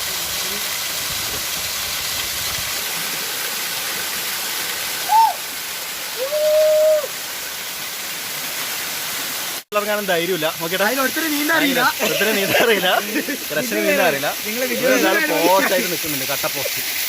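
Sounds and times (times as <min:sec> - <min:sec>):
waterfall rushing over rocks: 0:00.0 - 0:17.0.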